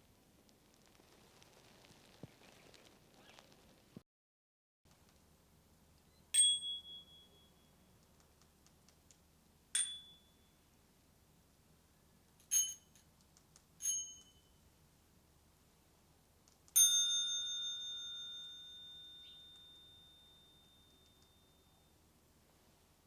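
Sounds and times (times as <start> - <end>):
bicycle bell dings: 6.4 - 7.7, 9.8 - 10.5, 12.4 - 13.0, 13.8 - 14.6, 16.8 - 21.9.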